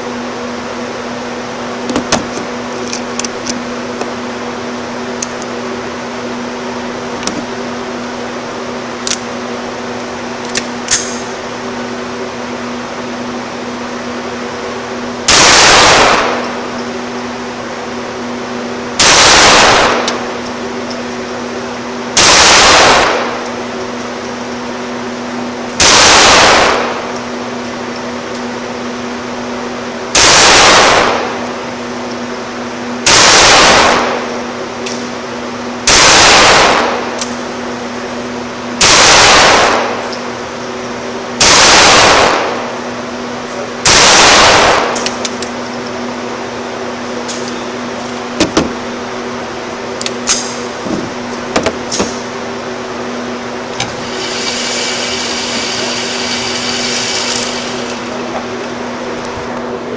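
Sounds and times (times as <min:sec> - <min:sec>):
pistol shots: 0:15.3 - 0:16.5, 0:19.0 - 0:20.3, 0:22.2 - 0:23.4, 0:25.8 - 0:27.1, 0:30.2 - 0:31.4, 0:33.1 - 0:34.2, 0:35.9 - 0:37.1, 0:38.8 - 0:40.1, 0:41.4 - 0:42.6, 0:43.9 - 0:45.2.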